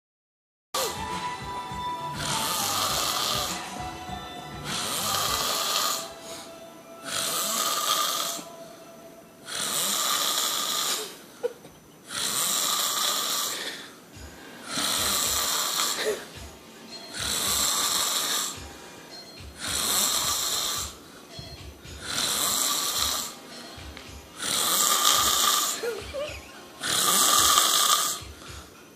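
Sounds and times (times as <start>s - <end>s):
man snoring loudly: 0.8s - 8.7s, 9.4s - 11.2s, 12.1s - 18.8s, 19.5s - 21.0s, 21.9s - 23.4s, 24.1s - 28.7s
quiet breaths: 12.0s - 28.9s.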